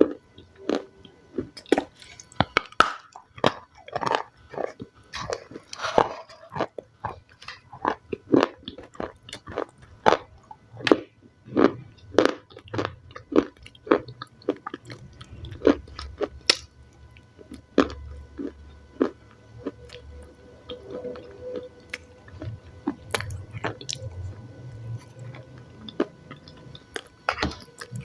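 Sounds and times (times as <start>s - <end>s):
chewing crunchy salad: 0.0s - 28.0s.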